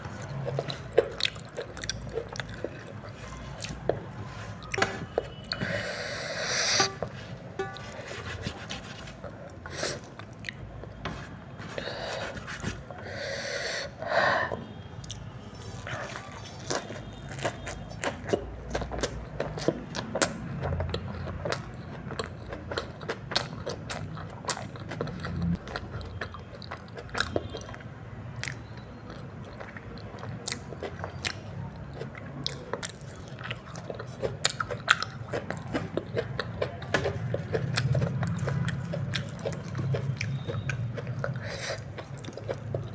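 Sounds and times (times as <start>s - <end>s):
chewing noodles: 0.0s - 14.0s, 14.6s - 42.9s
rustling scrape: 3.2s - 9.4s, 11.1s - 12.9s
wet mouth clicks: 37.4s - 42.9s.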